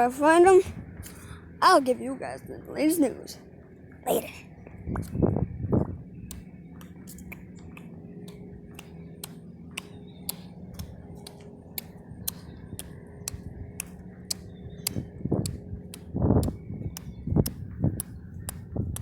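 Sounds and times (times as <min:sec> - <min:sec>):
low hum: 0:00.0 - 0:19.0
sharp clicks: 0:06.3 - 0:19.0.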